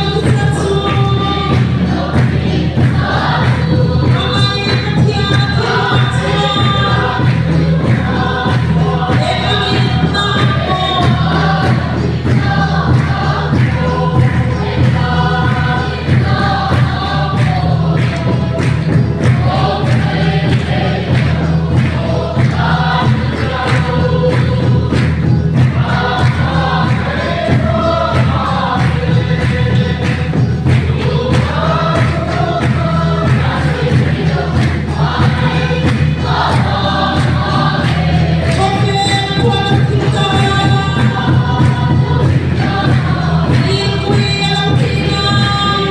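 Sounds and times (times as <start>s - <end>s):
band accompaniment with bass and drums: 0.0s - 45.9s
choir singing gospel song: 0.0s - 45.9s.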